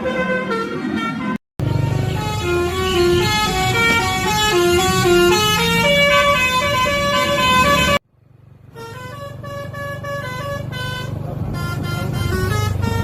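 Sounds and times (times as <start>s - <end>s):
musical air horn melody: 0.0s - 8.0s.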